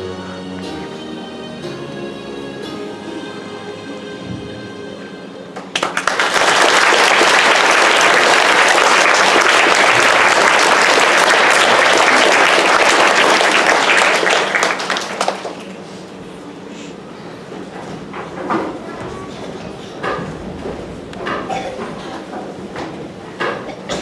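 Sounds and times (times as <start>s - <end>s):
crowd applauding: 5.6s - 15.9s.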